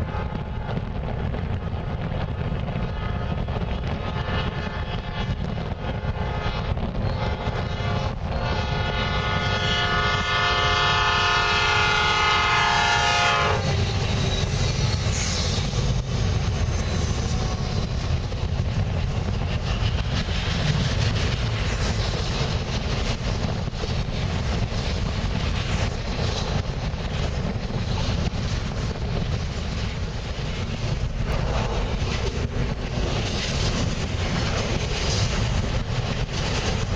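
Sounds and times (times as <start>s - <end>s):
train rolling past: 0.0s - 36.9s
wind buffeting microphone: 0.0s - 36.9s
locomotive horn: 6.3s - 14.1s.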